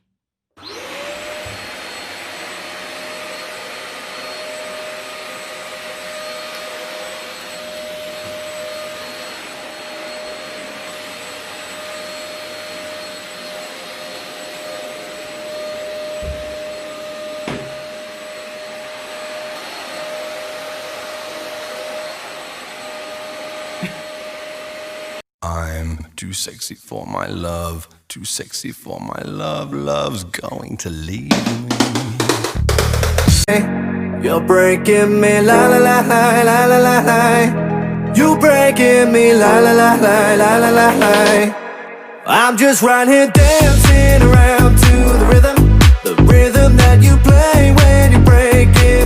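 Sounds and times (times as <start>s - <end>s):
vacuum cleaner running: 0.6s - 25.3s, 34.9s - 37.5s, 38.3s - 41.8s, 43.3s - 48.9s
low bumps: 31.3s - 33.5s.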